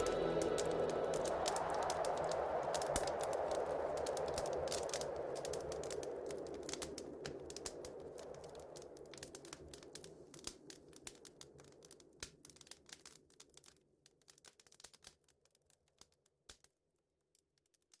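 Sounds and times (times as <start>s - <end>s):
low hum: 0.0s - 4.4s
faint crackling and clicks: 0.0s - 18.0s.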